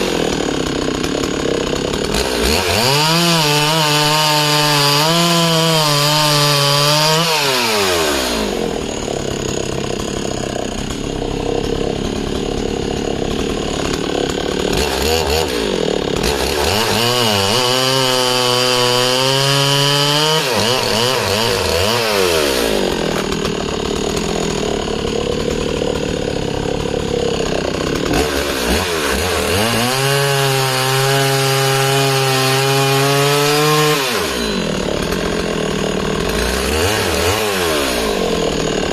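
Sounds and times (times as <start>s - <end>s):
chainsaw cutting log: 0.0s - 38.9s.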